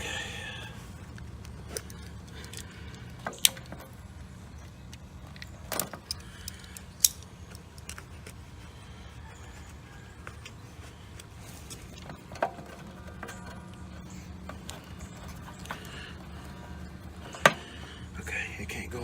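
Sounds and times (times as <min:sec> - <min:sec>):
steady low hum: 0:00.0 - 0:19.0
metallic clicks of tools: 0:04.9 - 0:08.4.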